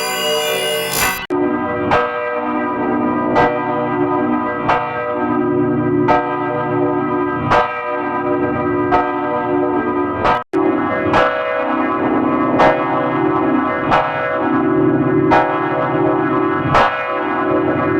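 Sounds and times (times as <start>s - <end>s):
church bells ringing: 0.0s - 1.2s
bell strikes ringing on: 0.0s - 1.3s.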